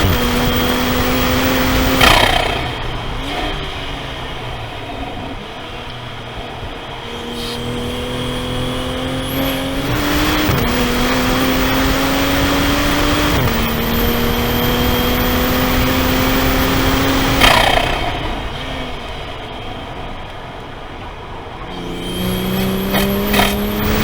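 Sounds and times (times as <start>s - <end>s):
car engine accelerating: 0.0s - 20.1s, 21.5s - 24.0s.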